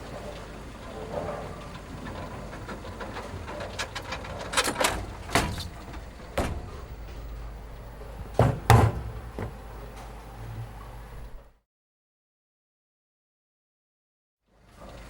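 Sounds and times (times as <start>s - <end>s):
steady low hum: 0.0s - 11.6s
sharp knocks: 8.2s - 9.6s.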